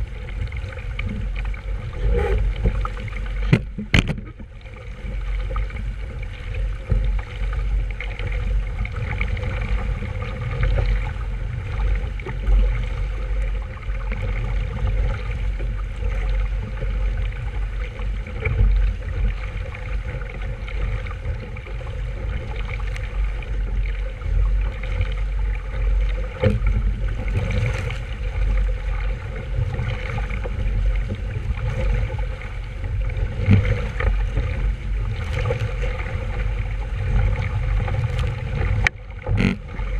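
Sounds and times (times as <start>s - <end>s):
heavy low rumble: 0.0s - 14.0s
water rushing along a hull: 0.0s - 39.9s.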